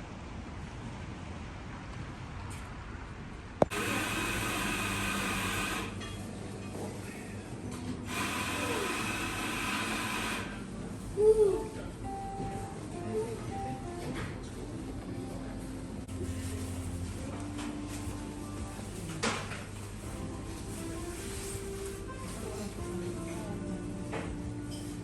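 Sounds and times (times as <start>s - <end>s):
small electric motor whirring: 3.7s - 6.0s, 8.1s - 10.6s.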